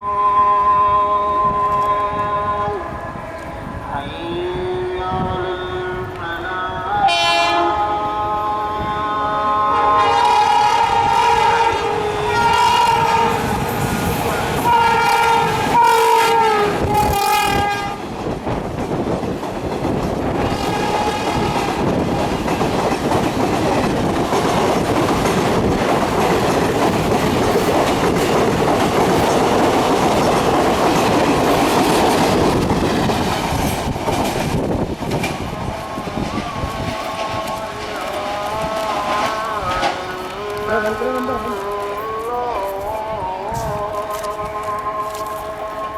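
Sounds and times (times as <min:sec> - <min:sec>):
locomotive horn blasts: 0:07.0 - 0:13.8, 0:14.6 - 0:18.1, 0:20.4 - 0:21.7, 0:35.4 - 0:42.5
train wheels clattering: 0:12.2 - 0:45.9.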